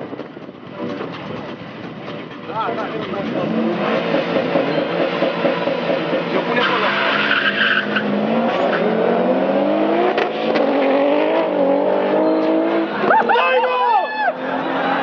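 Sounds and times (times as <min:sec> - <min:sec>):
race car engine accelerating: 0:02.7 - 0:13.3.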